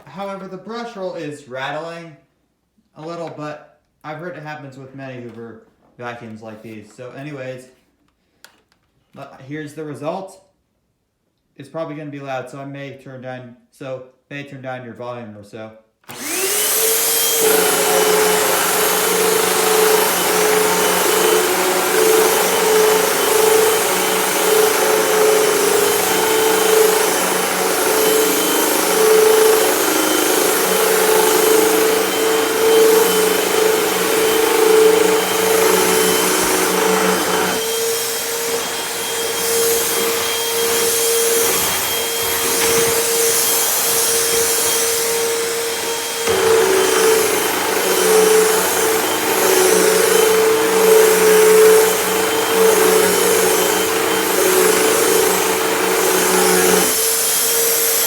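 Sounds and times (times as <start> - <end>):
vacuum cleaner motor whine: 16.1 - 58.0.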